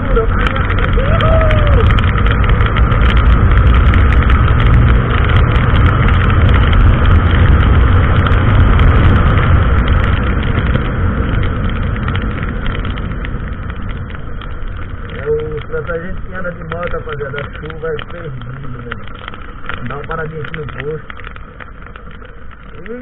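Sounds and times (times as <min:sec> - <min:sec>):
motorcycle engine running: 0:00.0 - 0:16.4
wind noise: 0:00.0 - 0:23.0.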